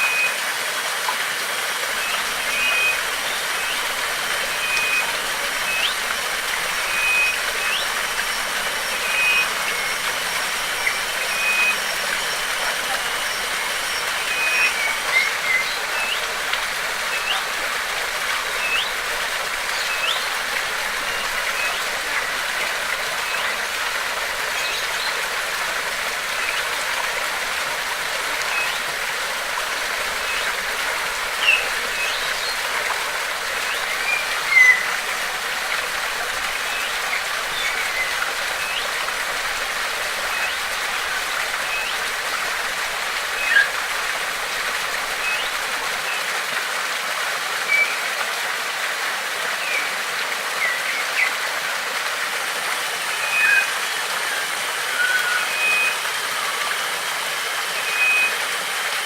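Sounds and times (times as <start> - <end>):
flowing water rushing: 0.0 - 59.0
thin high steady tone: 1.6 - 46.2
bird calling high notes: 1.9 - 46.2, 53.0 - 56.8, 57.7 - 58.5.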